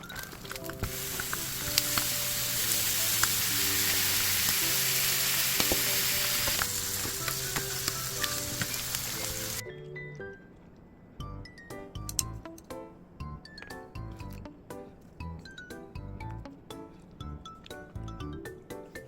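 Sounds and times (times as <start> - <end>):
food sizzling in a pan: 0.8 - 9.6.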